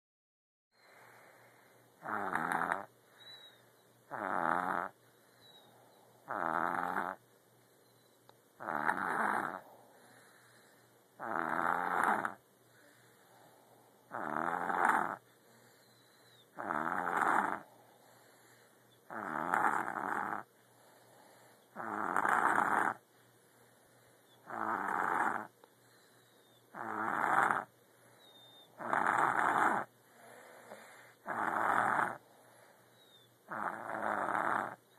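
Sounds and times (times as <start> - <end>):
quiet breathing: 0.7 - 4.1, 4.8 - 6.4, 7.2 - 8.6, 9.4 - 11.2, 12.2 - 26.8, 27.6 - 34.9
loud rasping snores: 2.0 - 2.9, 4.1 - 5.0, 6.2 - 7.2, 8.6 - 10.4, 11.2 - 12.4, 14.1 - 15.2, 16.4 - 17.7, 19.1 - 20.5, 21.7 - 23.0, 24.4 - 25.5, 26.7 - 27.7, 28.3 - 32.2, 33.5 - 34.8.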